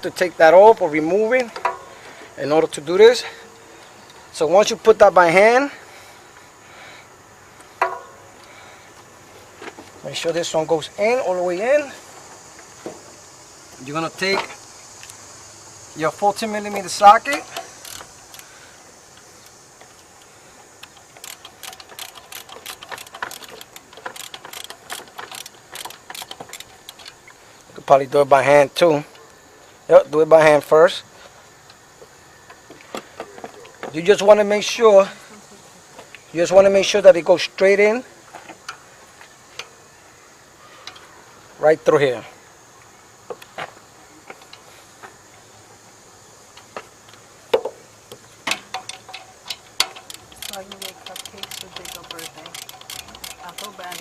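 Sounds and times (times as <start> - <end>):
ratchet wrench clicking: 17.3 - 18.5, 20.8 - 27.2, 49.7 - 54.0.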